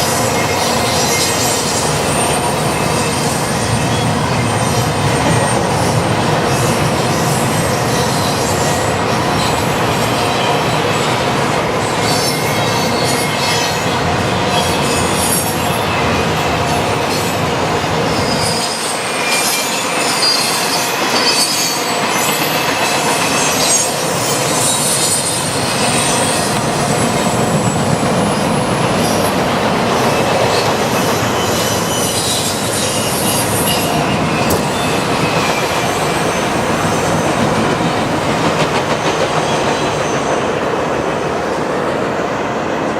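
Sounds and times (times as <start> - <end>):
train wheels clattering over rails: 0.0 - 42.1
high-pitched wheel squeals: 30.0 - 37.4.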